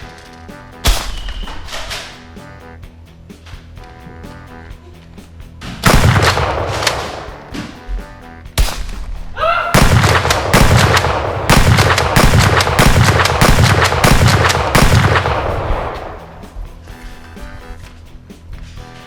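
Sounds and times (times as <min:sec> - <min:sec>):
background music: 0:00.0 - 0:19.0
rapid gunfire: 0:05.8 - 0:07.5, 0:09.7 - 0:16.4.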